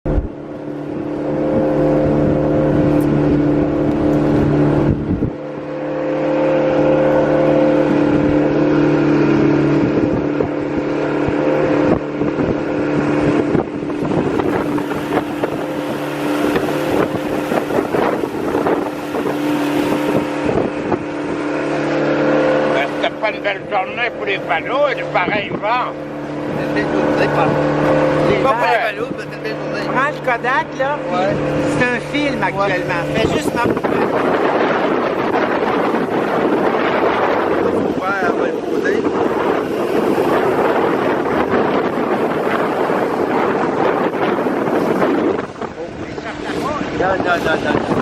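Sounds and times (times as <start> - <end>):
motorboat engine running: 0.0 - 48.0
wind buffeting microphone: 0.0 - 48.0
rough rushing noise with knocks: 11.2 - 23.6.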